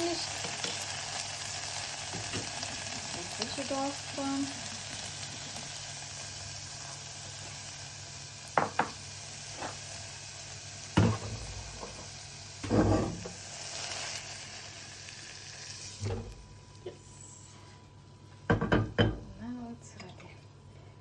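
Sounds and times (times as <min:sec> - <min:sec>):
sauce sizzling in a frying pan: 0:00.0 - 0:20.1
utensil knocking against pan: 0:18.5 - 0:19.3.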